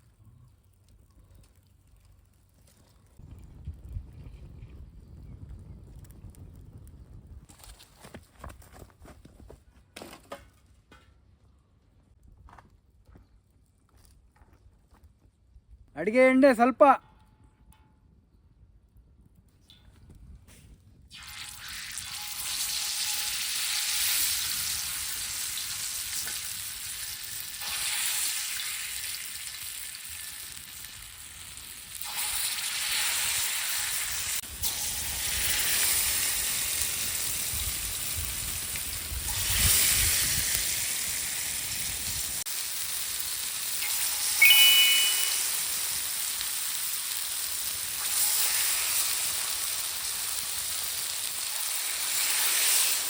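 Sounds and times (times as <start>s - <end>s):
chicken frying in oil: 21.1s - 44.4s, 45.1s - 53.0s
short high-pitched tone: 44.4s - 45.8s.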